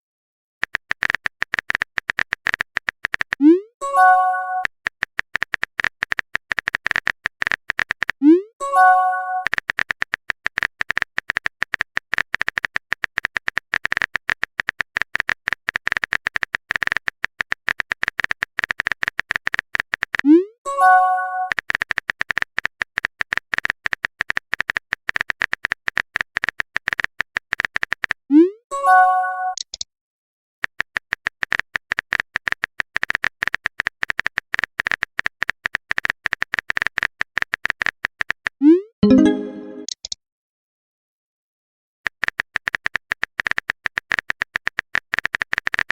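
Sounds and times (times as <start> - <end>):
phone keyboard typing clicks: 0.6 - 8.2, 9.4 - 20.2, 21.5 - 28.2, 30.6 - 40.2, 42.1 - 45.9
rising message alert tone: 39.0 - 39.9.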